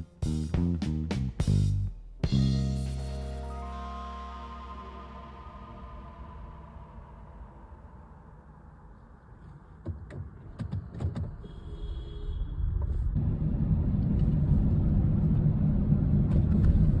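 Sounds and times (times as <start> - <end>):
low rumbling: 0.0 - 9.8, 12.5 - 17.0.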